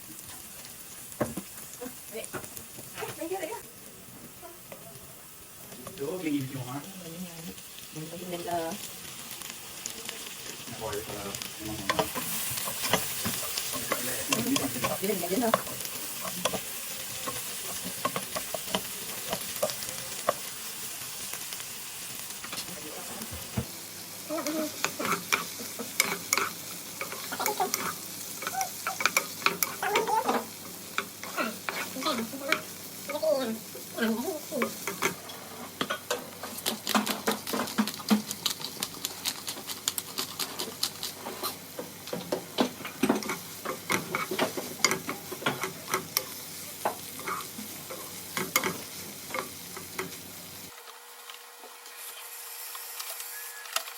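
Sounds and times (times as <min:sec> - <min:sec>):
food sizzling in a frying pan: 0:00.0 - 0:53.9
utensil scraping a pan: 0:31.2 - 0:32.7, 0:34.8 - 0:41.6.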